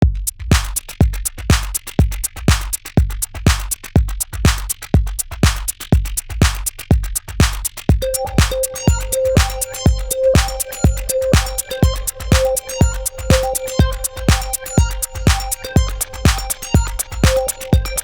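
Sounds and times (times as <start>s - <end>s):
heavy kick drum: 0.0s - 18.0s
sharp hi-hat ticks: 0.0s - 18.0s
electronic dance music: 7.4s - 18.0s.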